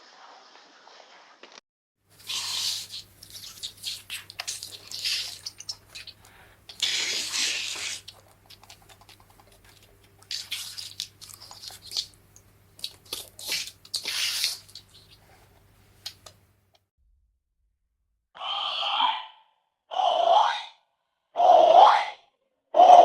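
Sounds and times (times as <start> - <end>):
wet clicks and squishes: 2.6 - 6.9, 7.7 - 15.2, 16.0 - 16.8.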